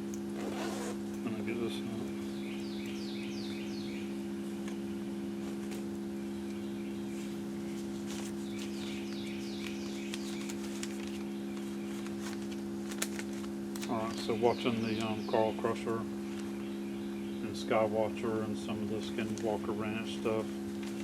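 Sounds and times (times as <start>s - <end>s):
steady low tone from speaker: 13.9s - 20.7s.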